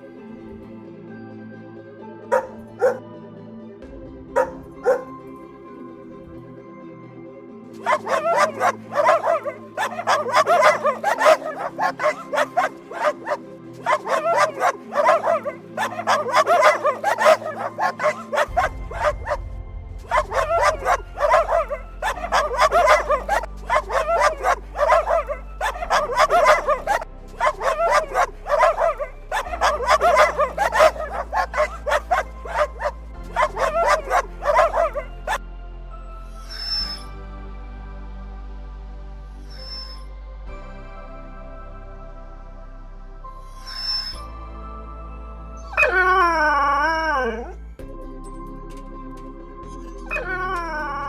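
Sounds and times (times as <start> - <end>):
music with slow bass notes: 0.0 - 51.0
dog barking: 2.3 - 3.0, 4.4 - 5.1, 7.8 - 19.4, 20.1 - 35.4.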